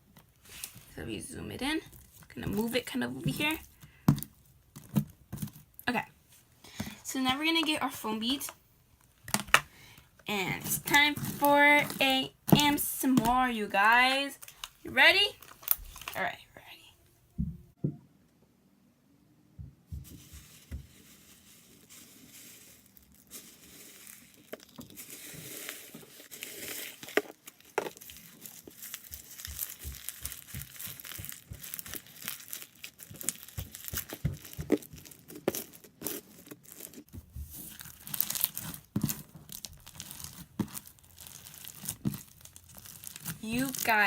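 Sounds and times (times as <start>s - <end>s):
slime crackling and popping: 14.4s - 16.2s, 22.9s - 37.1s, 37.7s - 44.0s.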